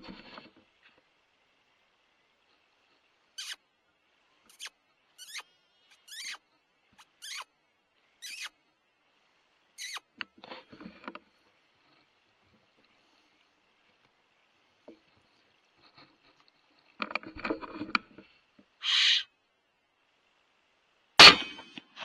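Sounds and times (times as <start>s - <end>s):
high-pitched falling squeaks: 4.5s - 6.4s, 7.0s - 7.4s, 8.2s - 8.5s, 9.8s - 10.0s.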